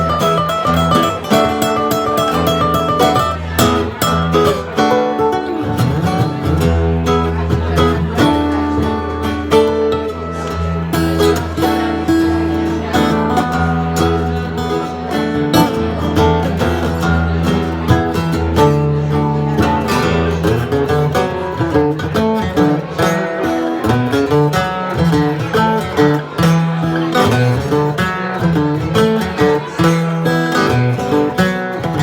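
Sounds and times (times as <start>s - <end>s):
acoustic guitar: 0.0s - 32.0s
bass line: 2.4s - 20.9s.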